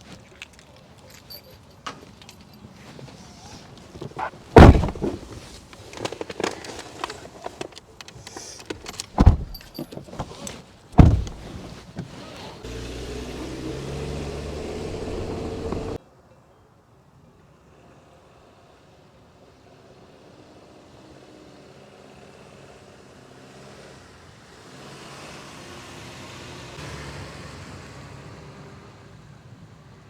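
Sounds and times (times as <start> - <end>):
car doors shutting: 4.1 - 5.4, 8.7 - 16.0
knocks and rattles: 4.1 - 5.5, 8.7 - 11.8
car engine running: 4.6 - 5.3, 11.0 - 11.6, 12.7 - 16.0.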